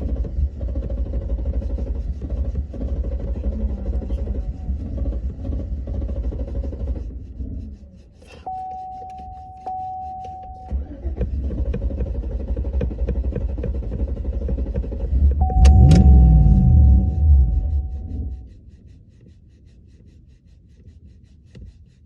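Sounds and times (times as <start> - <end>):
truck engine cranking: 9.7 - 18.4
steady electronic tone: 15.2 - 18.4.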